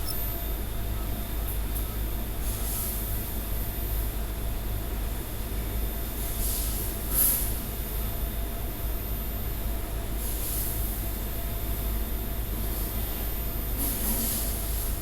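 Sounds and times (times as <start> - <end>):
welder electrical hum: 0.0 - 2.0.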